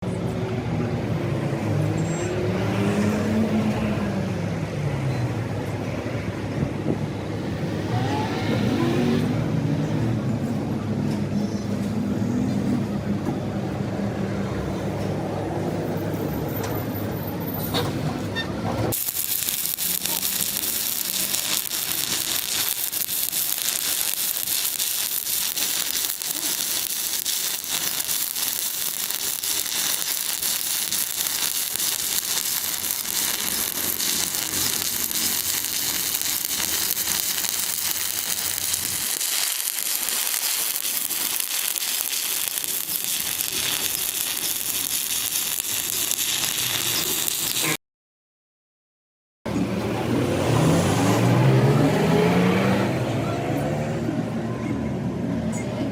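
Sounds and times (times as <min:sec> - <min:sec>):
electric arc welding crackle: 0:18.9 - 0:47.8.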